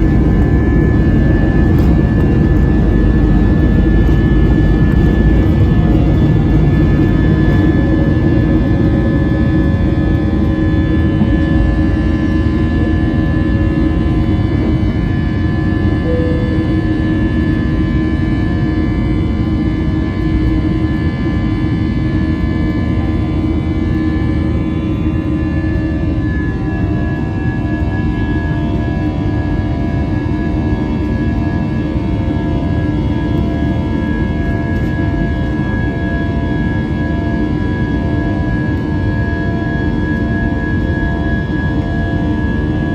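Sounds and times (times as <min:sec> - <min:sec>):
jet engines heard from cabin: 0:00.0 - 0:42.9.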